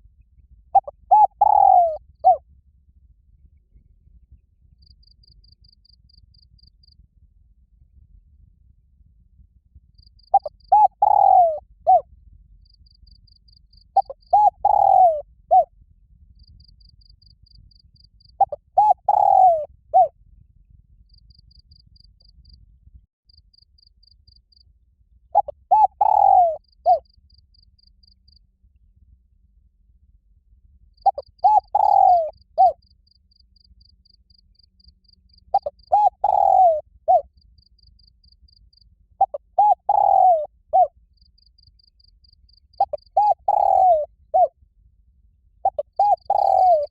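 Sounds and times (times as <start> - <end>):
cricket chirping: 0.8 - 2.4, 4.8 - 7.0, 9.9 - 12.0, 12.6 - 15.7, 16.3 - 20.1, 21.0 - 22.6, 23.3 - 24.7, 25.4 - 28.4, 30.9 - 44.5, 45.6 - 46.9
dove cooing: 0.8 - 2.4, 10.3 - 12.0, 14.0 - 15.7, 18.4 - 20.1, 25.4 - 27.0, 31.0 - 32.8, 35.5 - 37.3, 39.2 - 40.9, 42.8 - 44.5, 45.6 - 46.9.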